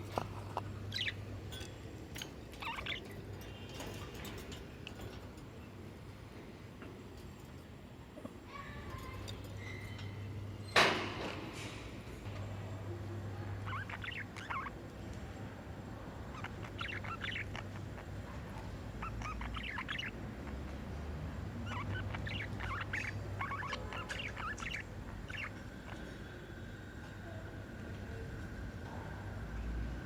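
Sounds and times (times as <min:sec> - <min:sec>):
steady low hum: 0:00.0 - 0:10.7
budgerigars chirping: 0:00.1 - 0:04.2, 0:13.6 - 0:14.8, 0:16.3 - 0:20.9, 0:21.6 - 0:26.0.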